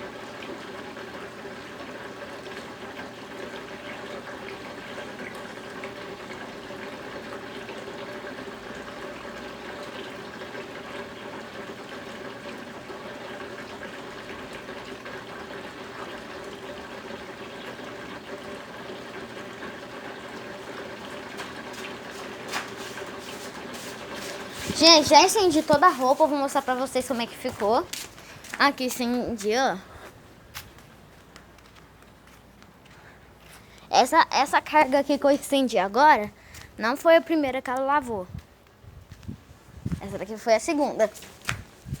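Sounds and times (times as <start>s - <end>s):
water rushing into washing machine: 0.0s - 29.8s.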